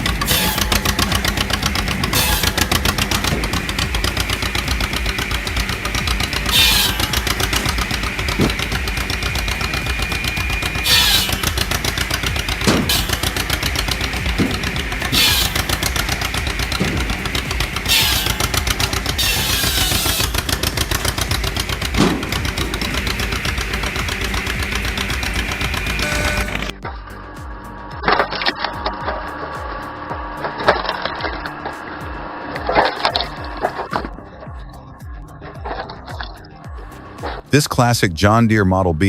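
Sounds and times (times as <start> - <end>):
log splitting burst: 0.0 - 26.8
log splitter clattering: 0.0 - 38.4.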